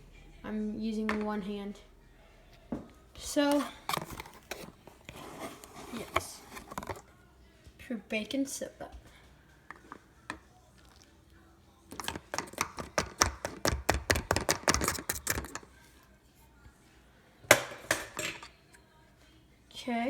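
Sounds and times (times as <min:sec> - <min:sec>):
powder tapped into a funnel: 0:11.9 - 0:15.6.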